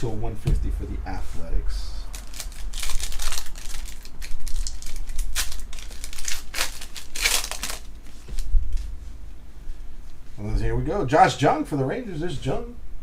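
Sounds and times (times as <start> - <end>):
card packs crinkling and tearing: 2.1 - 8.5.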